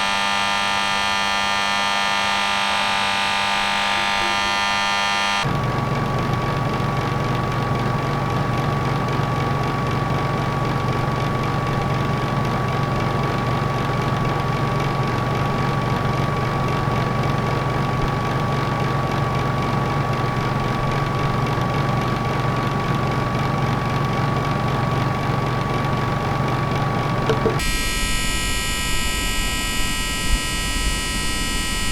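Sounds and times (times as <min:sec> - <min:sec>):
low electrical hum: 0:00.0 - 0:23.3, 0:24.4 - 0:31.9
thin high tone: 0:27.4 - 0:31.9.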